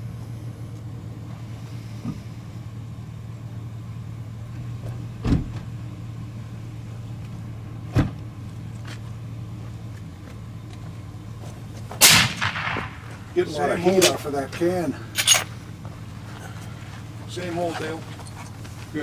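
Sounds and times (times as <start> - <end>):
low mechanical hum: 0.0 - 19.0
sharp cracks: 12.0 - 13.2.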